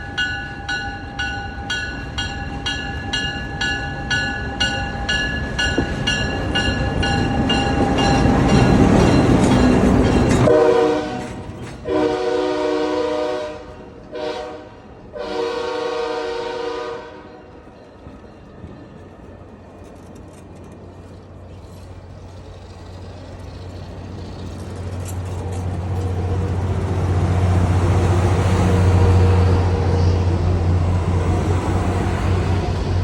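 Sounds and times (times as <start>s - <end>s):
locomotive bell clanging: 0.0s - 11.9s
train engine and wheel noise: 0.0s - 33.0s
train air horn blasts: 10.4s - 17.5s, 28.7s - 30.4s.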